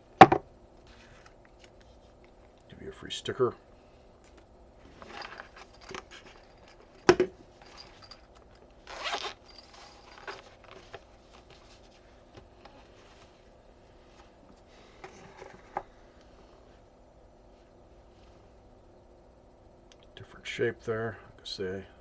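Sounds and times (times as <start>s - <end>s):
zipper rasp: 8.8s - 10.4s.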